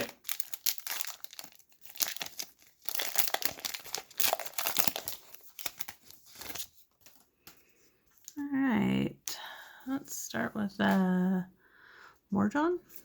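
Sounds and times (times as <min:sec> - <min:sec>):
plastic wrapper crinkling and tearing: 0:00.0 - 0:07.3.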